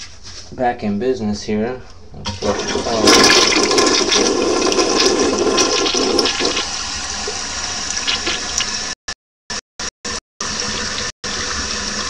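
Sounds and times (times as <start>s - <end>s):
toilet flushing: 2.2s - 8.9s, 10.4s - 12.0s.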